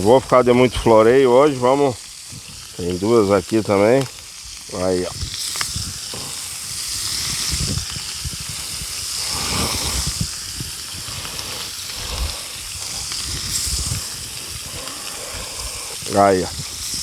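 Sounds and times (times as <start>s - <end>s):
low thuds: 0.0s - 1.6s
bacon sizzling on a griddle: 0.0s - 17.0s.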